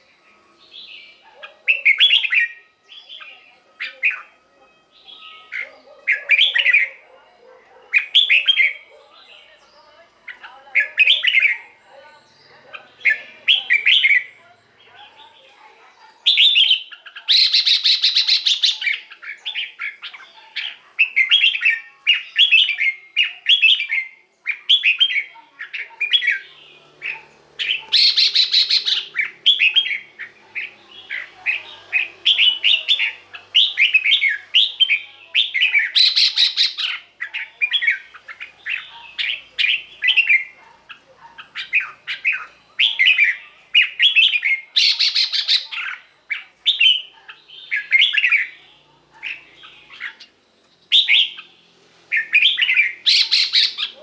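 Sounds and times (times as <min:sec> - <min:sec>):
bird singing whistled phrases: 0:00.7 - 0:04.3, 0:16.3 - 0:26.5, 0:27.6 - 0:30.0, 0:32.0 - 0:40.5, 0:41.6 - 0:46.0, 0:50.9 - 0:51.5, 0:52.1 - 0:54.0.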